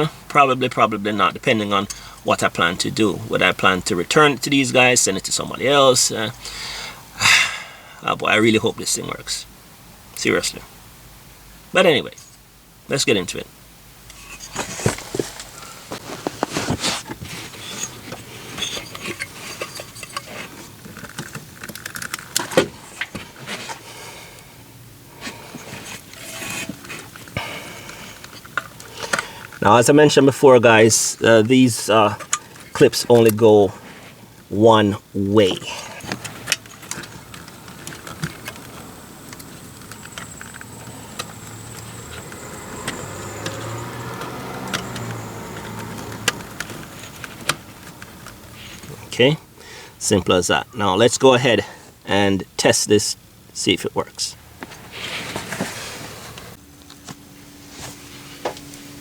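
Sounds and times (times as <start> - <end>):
plastic and metal parts clicking: 18.9 - 23.1, 36.0 - 42.3.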